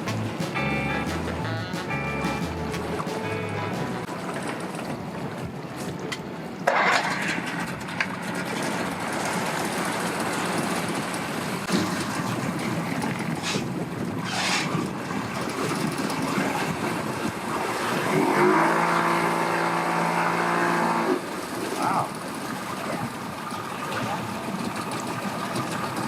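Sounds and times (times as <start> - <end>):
engine running: 0.0 - 4.1
rushing bursts: 0.0 - 4.2.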